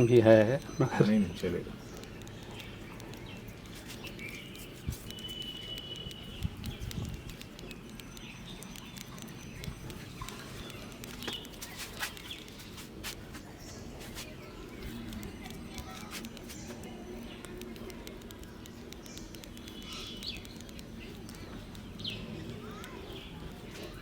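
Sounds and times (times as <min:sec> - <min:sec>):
bird chirping: 0:00.0 - 0:24.0
hands patting and rubbing face: 0:02.0 - 0:08.2, 0:09.0 - 0:16.8.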